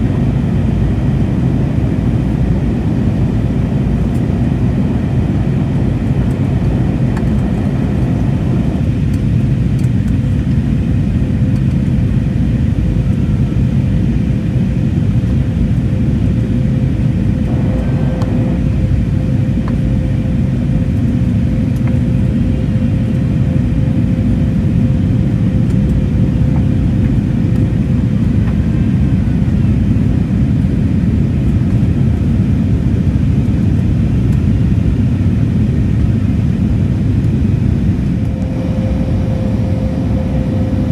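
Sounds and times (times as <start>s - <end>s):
airplane cabin roar: 0.0s - 40.9s
faint steady hum: 17.3s - 26.2s, 38.0s - 40.9s.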